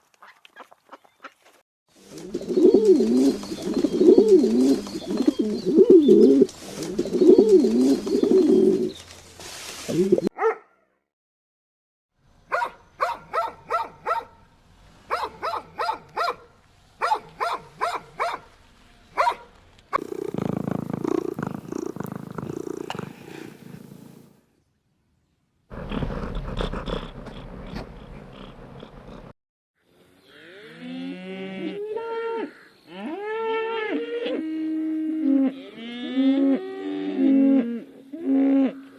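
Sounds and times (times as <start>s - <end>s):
low rumbling animal vocalising: 20.0s - 24.3s, 25.8s - 29.3s.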